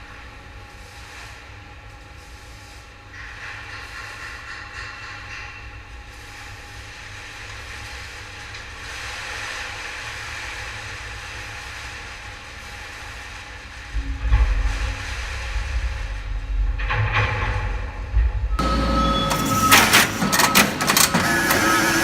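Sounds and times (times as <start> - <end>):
steady low hum: 0.0 - 20.3
loud low rumble: 13.8 - 18.8
hydraulic power unit hissing: 18.6 - 22.0.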